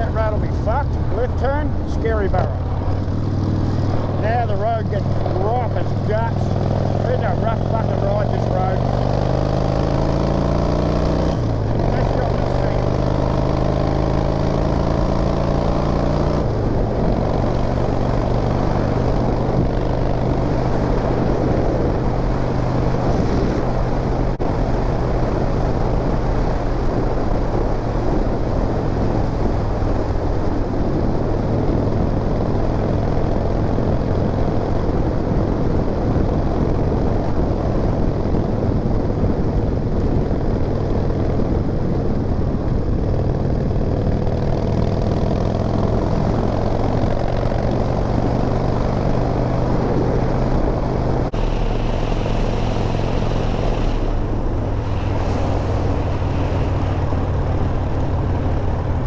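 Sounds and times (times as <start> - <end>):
motorcycle engine running: 0.0 - 59.0
wind and road noise: 0.0 - 59.0.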